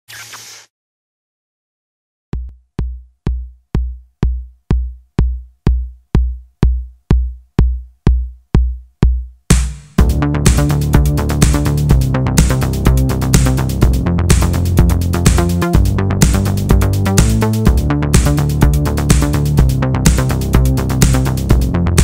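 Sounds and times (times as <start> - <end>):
kick drum beating: 2.4 - 11.6
electronic dance music: 9.5 - 22.0.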